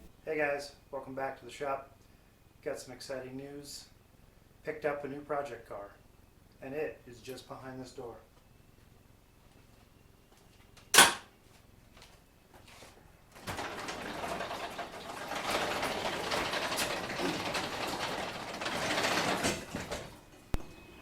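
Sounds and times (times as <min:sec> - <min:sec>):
door clack: 0:11.0 - 0:11.3
door sliding open: 0:13.3 - 0:20.7.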